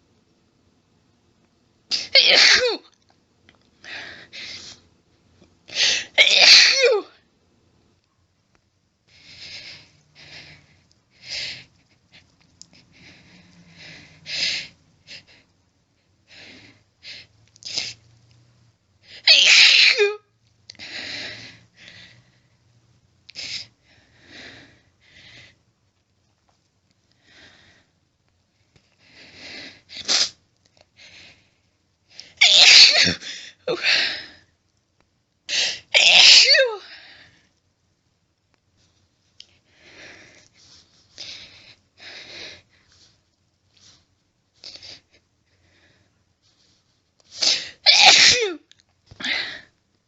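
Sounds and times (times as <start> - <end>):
woman sneezing loudly: 1.9 - 2.9, 5.8 - 7.1, 19.2 - 20.2, 32.4 - 34.0, 35.6 - 36.9, 47.4 - 48.7.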